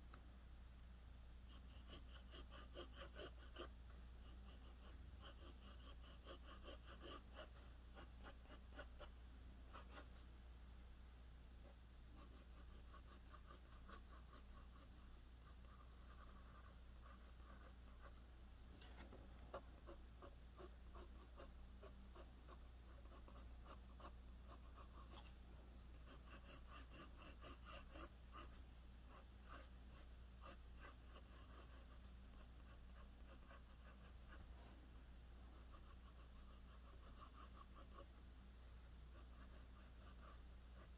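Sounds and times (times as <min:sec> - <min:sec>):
pencil scratching on paper: 0:01.5 - 0:09.1, 0:09.7 - 0:10.2, 0:11.6 - 0:18.2, 0:19.5 - 0:25.3, 0:26.0 - 0:34.5, 0:35.5 - 0:40.9.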